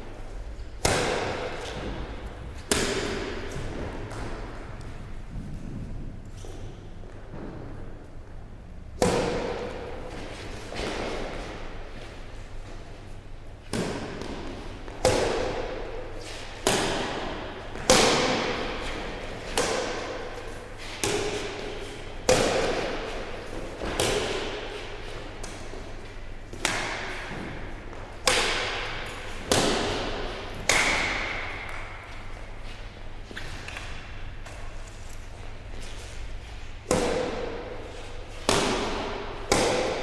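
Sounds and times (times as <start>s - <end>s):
racquets hitting shuttlecock: 0.8s - 5.0s, 9.0s - 11.9s, 13.7s - 35.0s, 36.8s - 40.0s.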